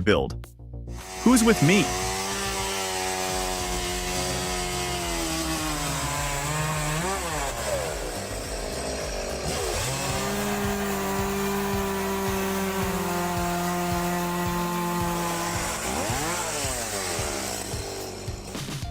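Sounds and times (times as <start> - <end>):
chainsaw cutting wood: 0.9 - 18.9.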